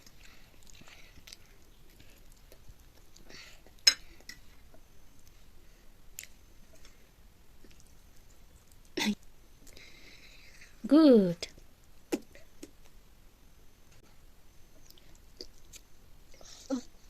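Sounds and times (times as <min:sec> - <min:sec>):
quiet chewing: 0:00.0 - 0:10.8, 0:14.7 - 0:17.0.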